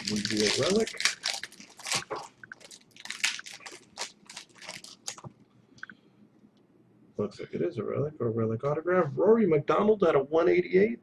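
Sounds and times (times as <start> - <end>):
card wrapper crinkling: 0.0 - 5.4.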